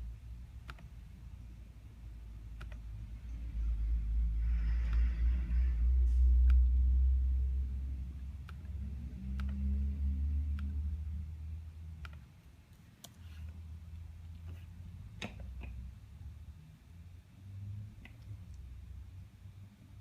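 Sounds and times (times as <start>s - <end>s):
sharp clicks: 2.5s - 2.9s, 8.4s - 9.6s.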